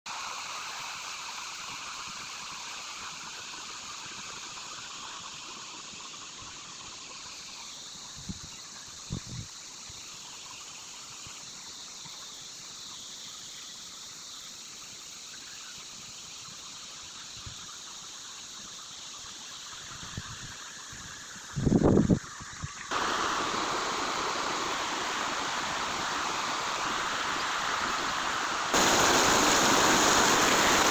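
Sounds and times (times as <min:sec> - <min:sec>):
mountain stream rushing: 0:22.8 - 0:30.9.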